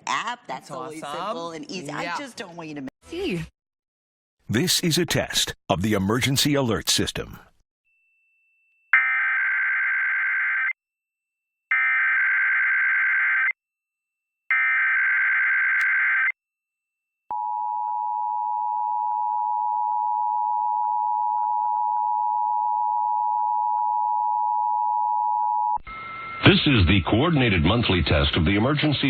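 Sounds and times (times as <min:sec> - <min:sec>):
two-tone attention signal: 0:25.8 - 0:27.1.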